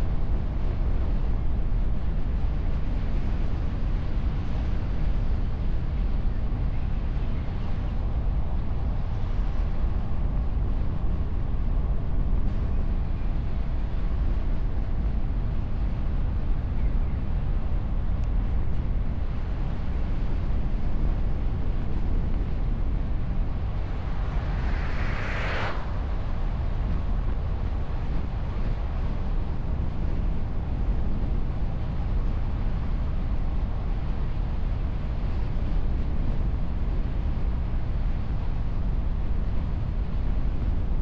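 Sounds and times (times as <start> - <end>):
wind and road noise: 0.0 - 41.0
whoosh: 22.8 - 28.3.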